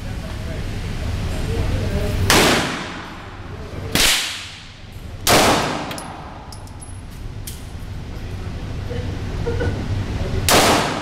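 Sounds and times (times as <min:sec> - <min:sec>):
handgun shots: 0:05.3 - 0:06.3, 0:10.5 - 0:11.0.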